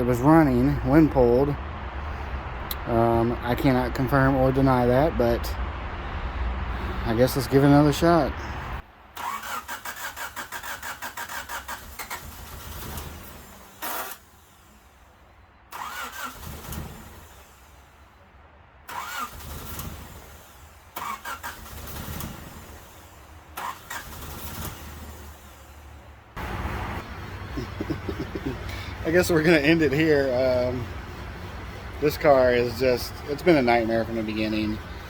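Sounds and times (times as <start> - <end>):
car engine cranking: 9.1 - 14.8, 15.7 - 17.8, 18.8 - 35.0.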